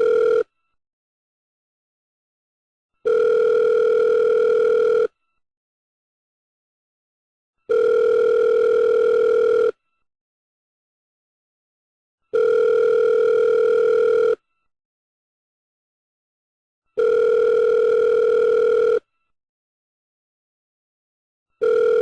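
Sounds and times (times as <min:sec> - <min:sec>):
telephone ringback tone: 0:00.0 - 0:00.5, 0:03.0 - 0:05.2, 0:07.7 - 0:09.8, 0:12.3 - 0:14.4, 0:17.0 - 0:19.1, 0:21.6 - 0:22.0.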